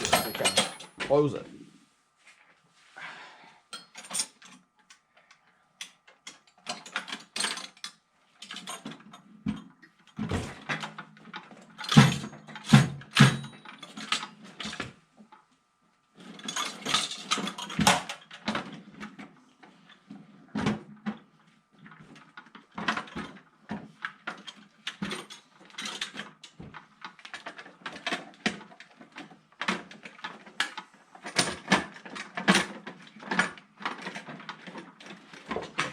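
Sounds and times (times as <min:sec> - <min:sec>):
metal tools clanking in drawer: 0:00.0 - 0:01.1, 0:11.8 - 0:14.3.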